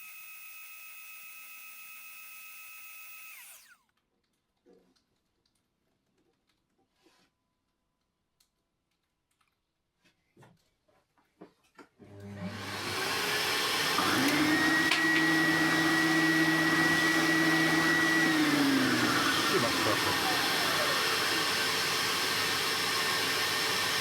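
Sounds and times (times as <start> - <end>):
sanding machine motor whining: 0.0 - 3.8, 12.4 - 24.0.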